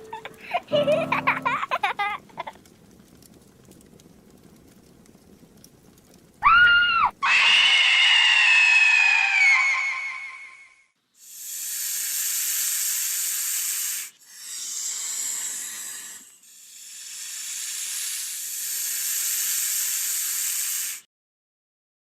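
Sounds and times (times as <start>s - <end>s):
steady high hiss: 0.0s - 2.5s, 11.2s - 21.1s.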